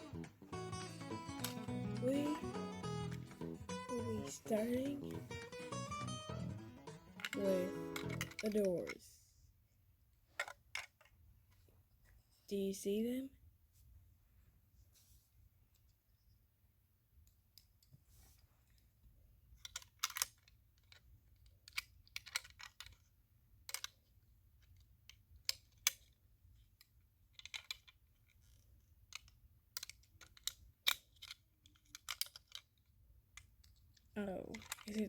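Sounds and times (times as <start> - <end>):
small parts clicking and tapping: 1.1 - 9.0, 10.4 - 11.2, 19.5 - 35.0.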